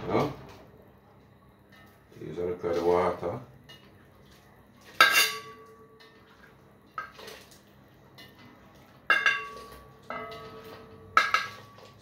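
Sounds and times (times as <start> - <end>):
metal utensil clanking on pot lid: 5.0 - 5.7, 9.1 - 12.0.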